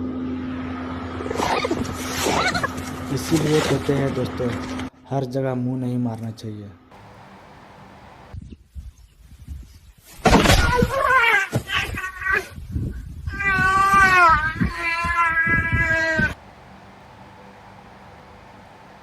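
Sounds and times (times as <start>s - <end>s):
cat yowling: 10.7s - 12.6s, 13.3s - 16.4s.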